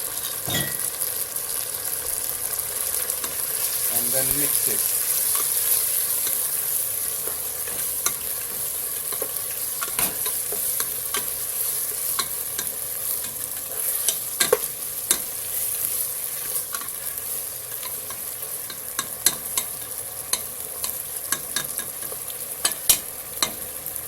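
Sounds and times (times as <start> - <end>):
chicken sizzling in a frying pan: 0.0 - 24.0
utensil scraping a pan: 7.3 - 15.8.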